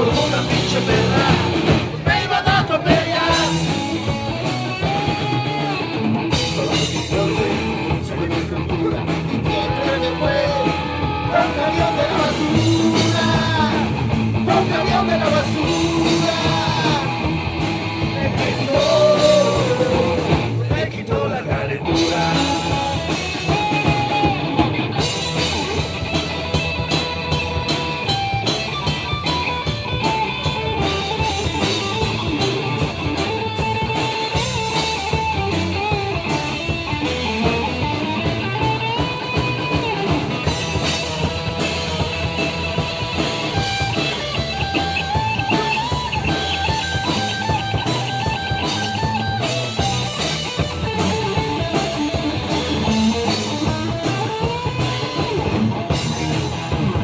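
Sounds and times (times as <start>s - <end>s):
bass guitar: 0.0s - 57.0s
drum kit: 0.0s - 57.0s
lead guitar bent notes: 21.9s - 57.0s.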